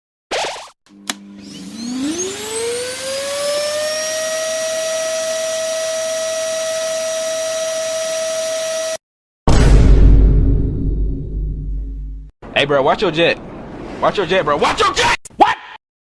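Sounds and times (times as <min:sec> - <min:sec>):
machine whine spinning up: 0:01.1 - 0:09.0.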